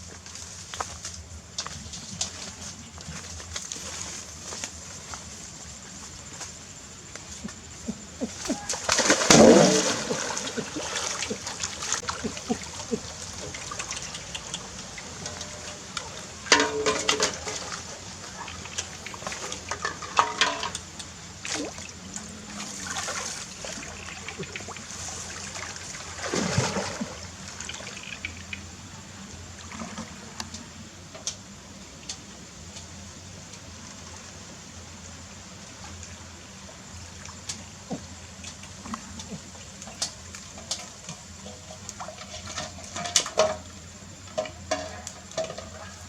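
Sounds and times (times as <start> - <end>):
water splashing and trickling: 8.2 - 31.4, 33.2 - 46.0.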